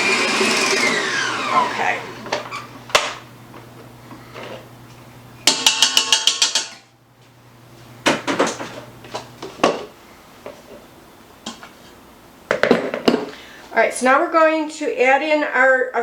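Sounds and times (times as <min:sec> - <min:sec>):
faint steady hum: 0:00.0 - 0:12.5
metal striking mixing bowl: 0:05.4 - 0:06.8
bowls and utensils clinking: 0:05.5 - 0:06.8.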